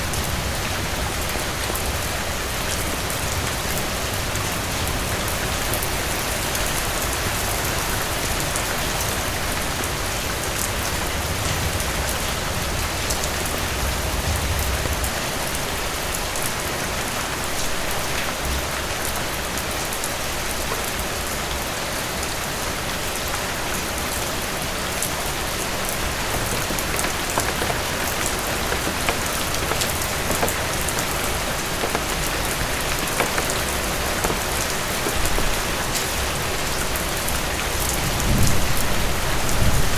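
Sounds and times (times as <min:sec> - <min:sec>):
heavy rain hiss: 0:00.0 - 0:39.9
drops spattering on surfaces: 0:26.2 - 0:35.8.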